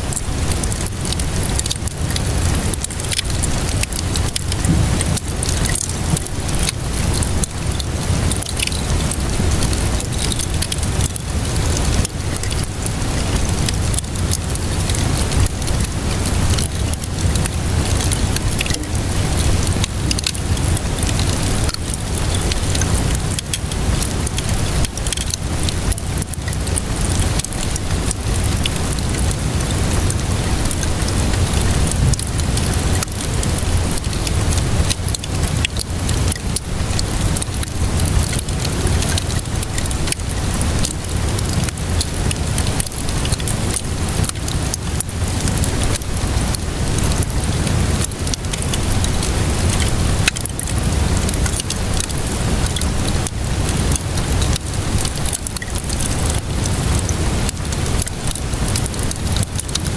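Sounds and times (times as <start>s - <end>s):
steady rainfall: 0.0s - 59.9s
wood fire crackling and popping: 0.0s - 59.9s
low rumble: 17.2s - 21.2s.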